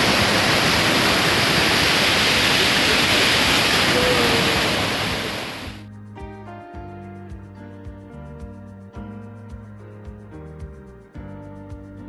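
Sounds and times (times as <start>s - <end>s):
waterfall rushing: 0.0s - 5.8s
background music with held notes: 5.8s - 12.0s.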